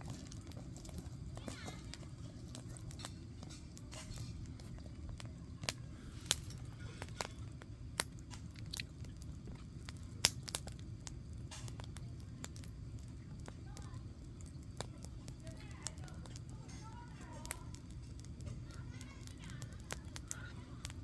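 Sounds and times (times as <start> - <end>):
campfire crackling: 0.0 - 21.0
low steady fire rumble: 0.0 - 21.0
sharp pops from fire: 0.0 - 21.0.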